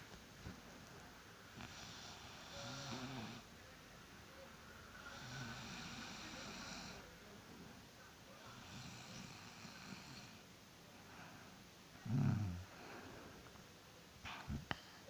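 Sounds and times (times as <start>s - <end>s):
woman snoring: 1.6s - 3.4s, 5.1s - 7.0s, 12.0s - 12.7s.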